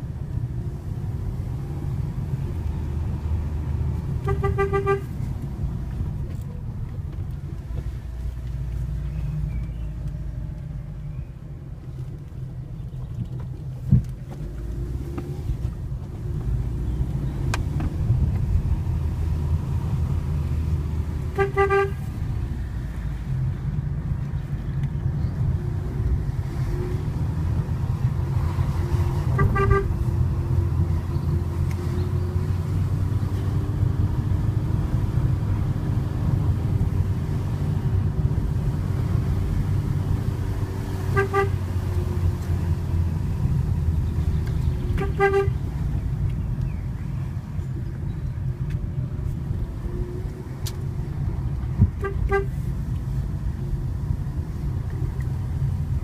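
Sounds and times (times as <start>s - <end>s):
car engine and tyres humming: 0.0s - 56.0s
car horn toots: 4.2s - 5.2s, 21.3s - 22.1s, 29.3s - 30.1s, 41.1s - 41.6s, 44.9s - 45.6s, 52.0s - 52.6s.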